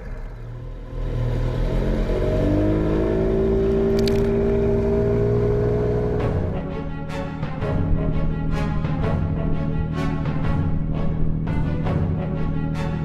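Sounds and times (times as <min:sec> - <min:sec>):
vehicle engine accelerating: 0:00.0 - 0:06.8.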